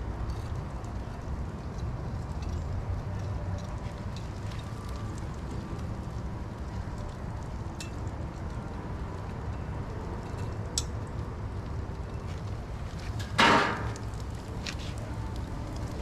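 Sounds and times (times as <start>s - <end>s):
food sizzling on a griddle: 4.0s - 16.0s.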